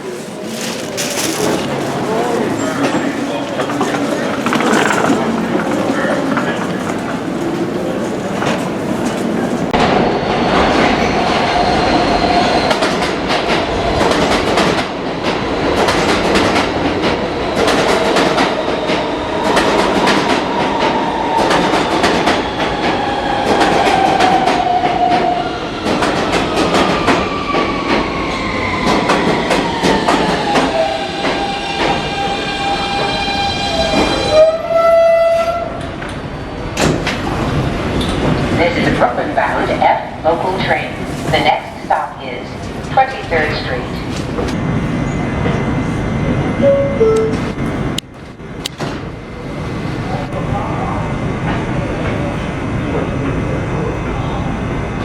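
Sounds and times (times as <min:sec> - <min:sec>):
train wheels clattering: 0:00.0 - 0:10.0, 0:12.7 - 0:28.1.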